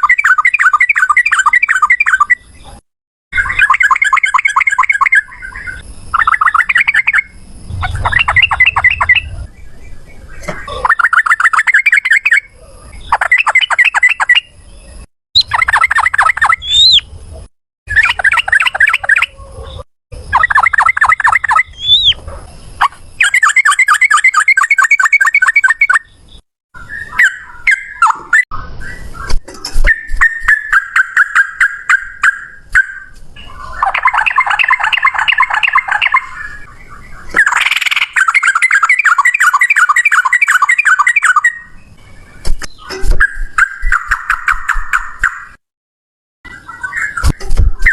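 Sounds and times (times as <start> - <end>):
bird rising whistles: 3.4 - 12.4, 15.4 - 17.1, 20.3 - 22.2
bird chattering trills: 3.4 - 14.5, 15.4 - 17.1, 17.9 - 22.2, 29.9 - 36.6.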